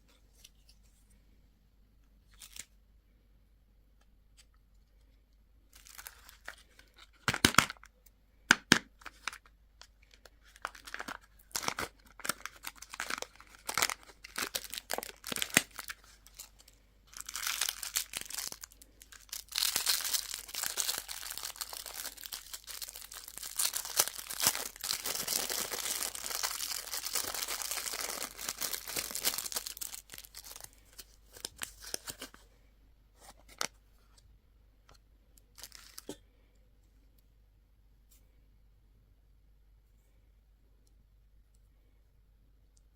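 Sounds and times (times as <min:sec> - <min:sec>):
packaging tearing and crinkling: 0:10.6 - 0:16.5, 0:17.1 - 0:32.3.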